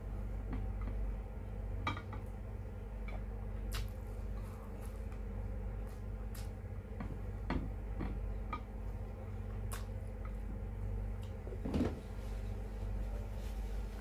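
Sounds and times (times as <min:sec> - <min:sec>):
steady low hum: 0:00.0 - 0:14.0
wet mouth clicks and smacks: 0:03.7 - 0:04.0, 0:05.8 - 0:06.6, 0:09.7 - 0:09.9.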